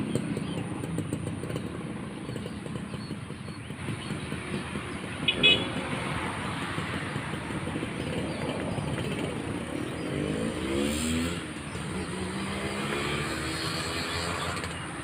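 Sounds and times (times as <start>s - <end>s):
road noise: 0.0s - 15.0s
vehicle engine speeding up: 9.8s - 15.0s.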